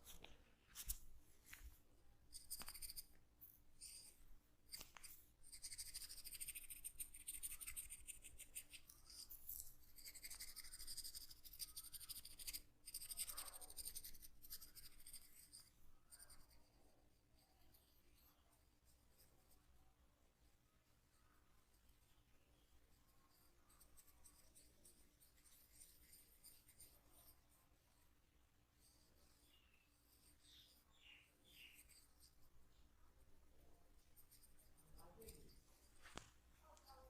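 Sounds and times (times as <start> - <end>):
fingers rubbing scalp and hair: 0.0 - 12.4.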